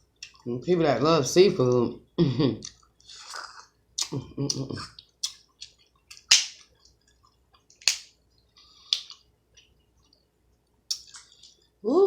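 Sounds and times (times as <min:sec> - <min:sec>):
crab shells cracking: 0:07.7 - 0:08.1.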